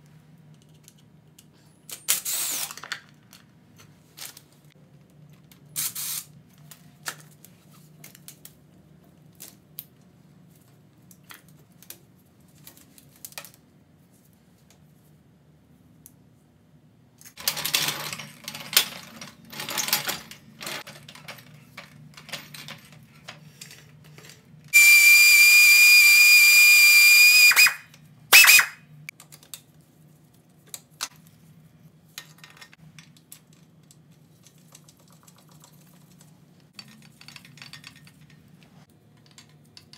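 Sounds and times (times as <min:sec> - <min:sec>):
tools and parts clattering: 0:17.3 - 0:24.5, 0:32.1 - 0:33.8, 0:36.7 - 0:39.9
power tool whining: 0:24.8 - 0:27.8.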